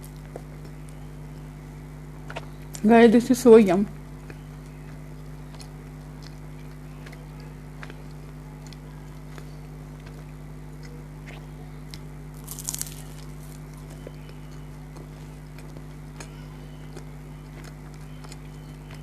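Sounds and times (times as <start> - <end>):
steady low hum: 0.0 - 19.0
chewing clicks: 4.1 - 19.0
crunchy bite: 4.2 - 19.0.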